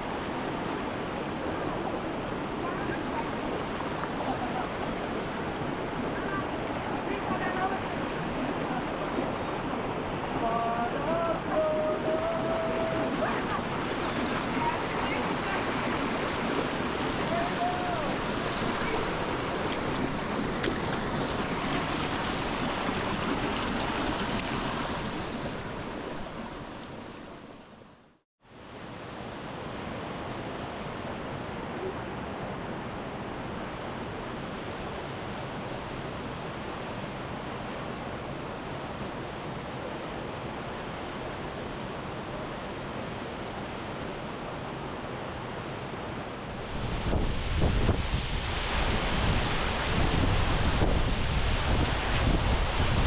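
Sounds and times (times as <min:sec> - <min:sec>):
rushing water: 0:00.0 - 0:53.0
wind on microphone: 0:46.5 - 0:53.0.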